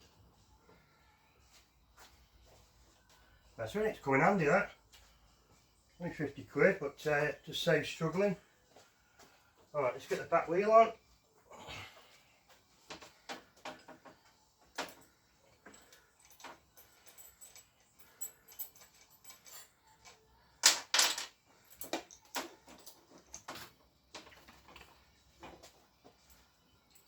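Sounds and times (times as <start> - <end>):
metal parts clinking: 14.8 - 24.9.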